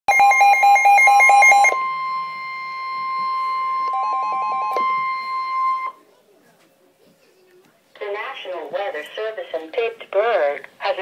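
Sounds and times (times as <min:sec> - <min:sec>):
alternating two-pitch beeping: 0:00.1 - 0:06.0.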